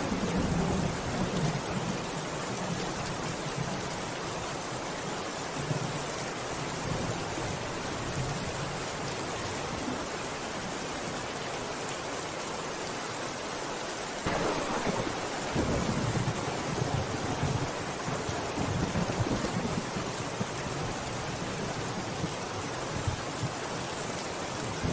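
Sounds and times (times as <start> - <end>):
low rumble of thunder: 0.0 - 2.1, 14.3 - 22.4
steady rain falling: 0.0 - 24.9.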